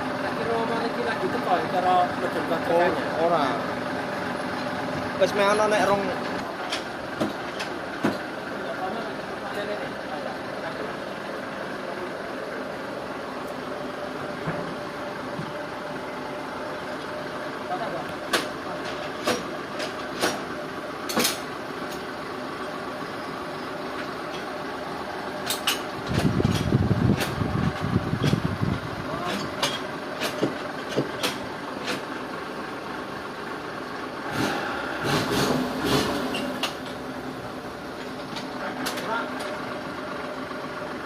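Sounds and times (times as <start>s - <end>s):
engine running: 0.0s - 41.0s
sharp knocks and clanks: 6.3s - 8.3s, 18.2s - 22.1s, 29.2s - 32.2s
heavy low rumble: 26.0s - 29.2s.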